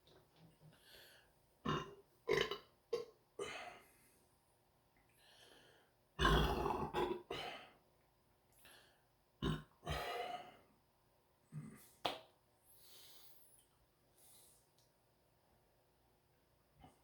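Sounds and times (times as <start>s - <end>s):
man burping: 1.7s - 3.7s, 6.2s - 7.7s, 9.4s - 10.3s.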